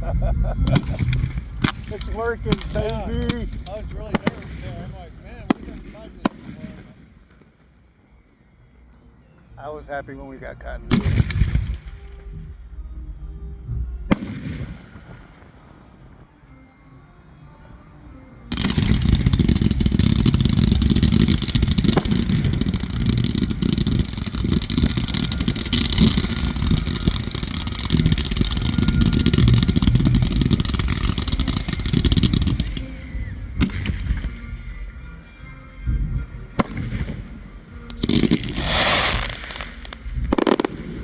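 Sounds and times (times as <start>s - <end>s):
fireworks bangs and crackle: 0.5s - 7.6s, 10.9s - 12.0s, 14.1s - 16.2s, 18.5s - 34.4s, 36.6s - 41.0s.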